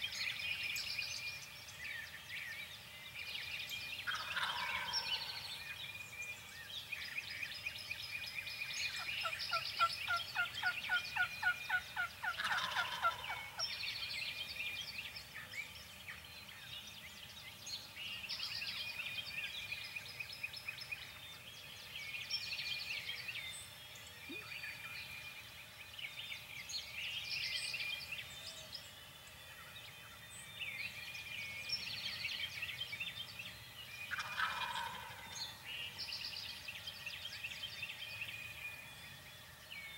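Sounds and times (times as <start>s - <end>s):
songbird chirping: 0.0s - 39.9s
turkey calling: 4.1s - 5.3s, 10.6s - 13.4s, 34.1s - 35.2s.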